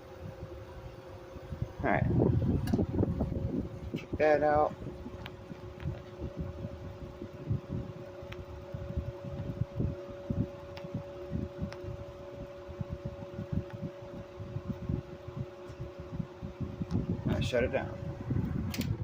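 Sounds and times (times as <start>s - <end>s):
airflow buffeting microphone: 0.0s - 19.0s
window air conditioner humming: 0.0s - 19.0s.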